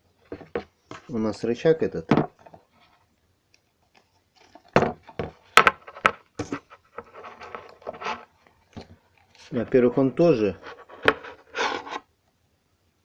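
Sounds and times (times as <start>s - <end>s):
faint rubbing: 6.4s - 8.5s, 9.2s - 12.1s.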